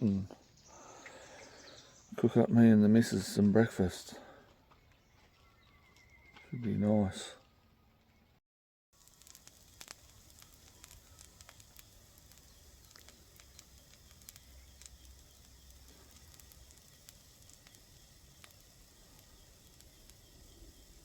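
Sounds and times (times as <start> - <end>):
crackles and pops: 9.0 - 21.0
food sizzling in a pan: 9.0 - 21.0.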